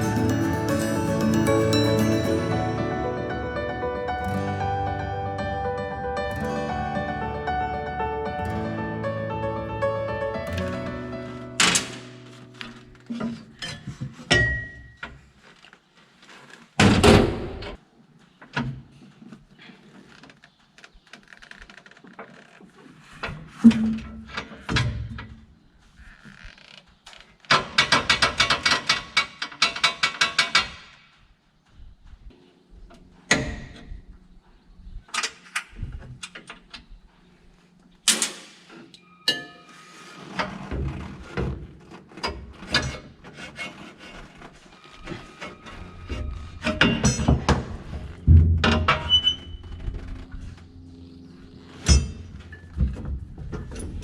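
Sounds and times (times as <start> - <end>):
metal tools knocking and clunking: 13.1 - 15.2, 39.3 - 39.7, 46.1 - 49.4.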